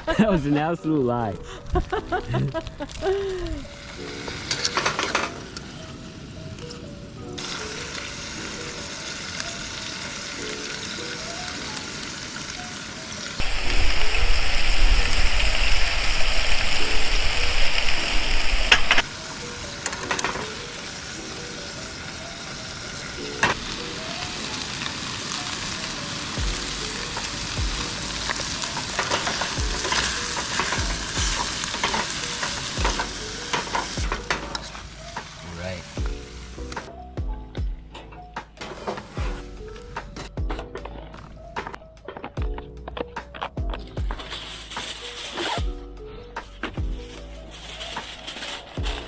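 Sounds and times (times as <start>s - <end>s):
food sizzling in a pan: 3.0s - 6.2s, 7.4s - 36.7s, 44.2s - 45.6s, 47.0s - 49.0s.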